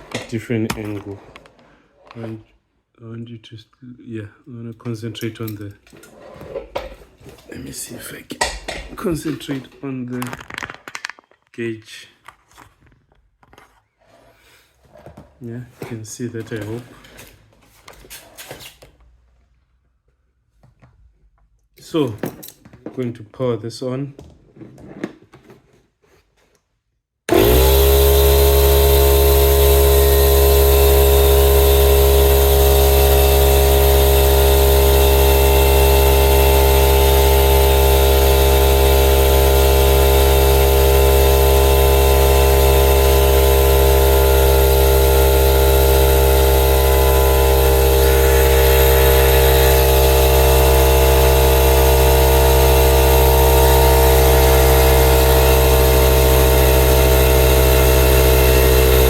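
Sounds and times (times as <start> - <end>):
air compressor running: 0.0 - 0.3, 27.3 - 59.0.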